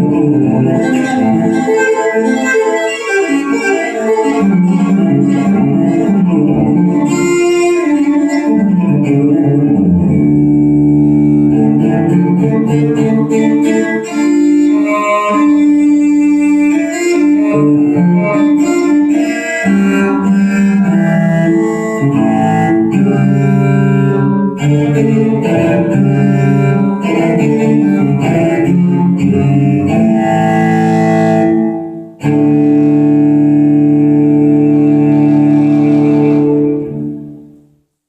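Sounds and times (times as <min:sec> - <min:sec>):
strong bass line: 0:20.2 - 0:37.6.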